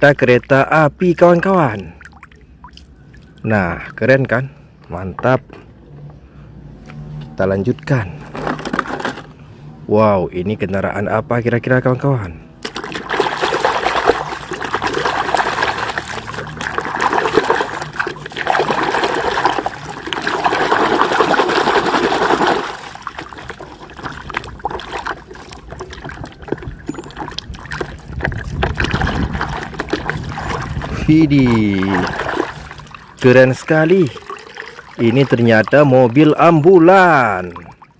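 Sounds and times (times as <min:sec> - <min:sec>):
water running and splashing: 0:12.6 - 0:37.9.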